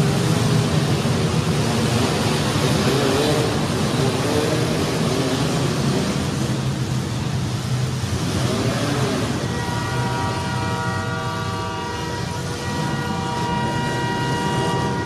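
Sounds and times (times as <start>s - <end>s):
car engines running hard: 0.0s - 15.0s
horn blaring multi-tone chord: 9.3s - 15.0s.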